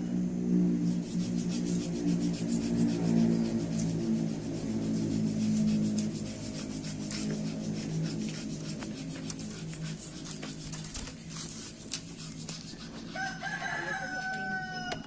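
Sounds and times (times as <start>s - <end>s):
rooster crowing: 13.0s - 15.0s.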